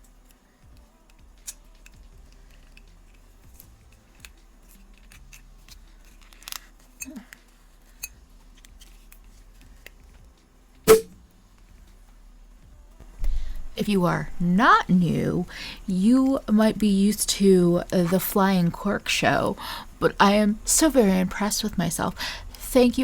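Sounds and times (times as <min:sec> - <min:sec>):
cork popping: 0:10.9 - 0:11.2.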